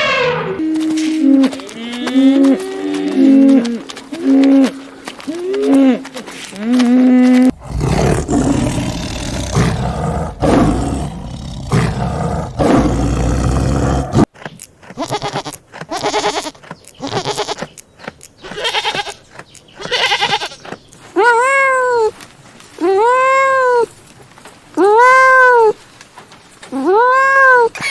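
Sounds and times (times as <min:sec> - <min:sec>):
short wavering animal calls: 0:00.0 - 0:06.1
clear rising and falling call: 0:00.0 - 0:06.2
loud rough animal call: 0:00.0 - 0:14.2.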